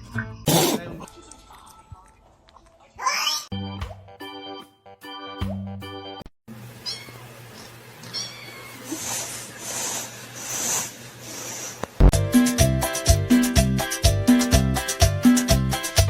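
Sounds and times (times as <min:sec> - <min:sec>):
cat meowing: 0:08.0 - 0:08.9
upbeat latin music: 0:12.1 - 0:16.0.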